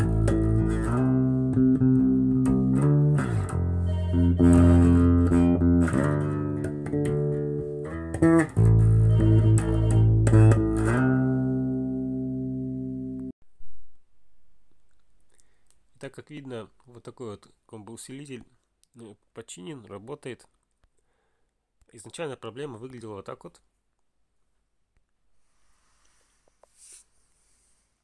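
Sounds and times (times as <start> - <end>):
electric bass guitar notes: 0.0 - 13.8.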